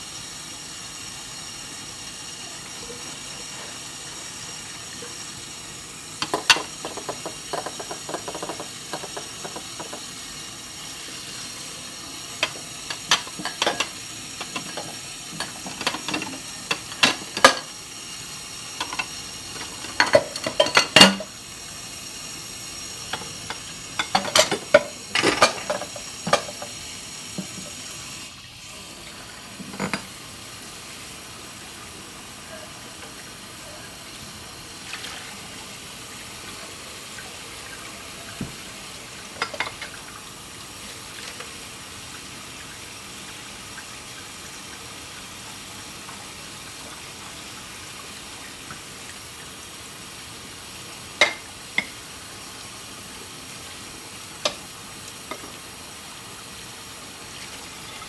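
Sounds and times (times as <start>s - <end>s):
dishes and cutlery clinking: 6.2s - 10.1s, 12.4s - 17.7s, 18.8s - 21.4s, 23.1s - 26.8s, 29.7s - 30.1s, 39.4s - 40.0s, 51.2s - 52.0s.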